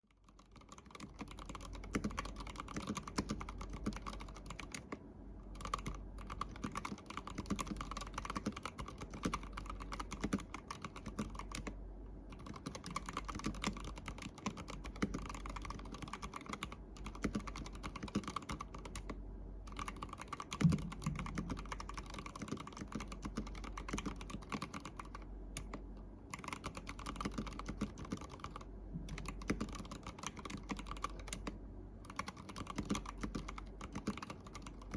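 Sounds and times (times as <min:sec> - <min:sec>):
mechanical keyboard typing: 0:00.1 - 0:34.9
loud thump on keyboard: 0:20.6 - 0:21.6.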